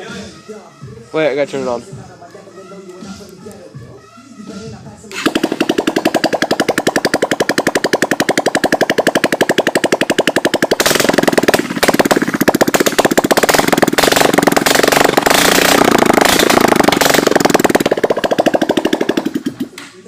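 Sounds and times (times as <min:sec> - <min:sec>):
motorcycle engine revving: 0:05.1 - 0:20.0.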